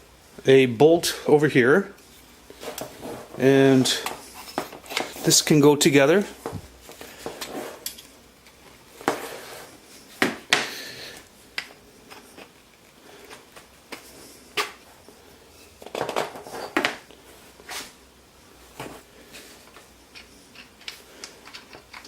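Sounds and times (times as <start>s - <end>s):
wooden parts knocking and clicking: 20.1s - 22.0s.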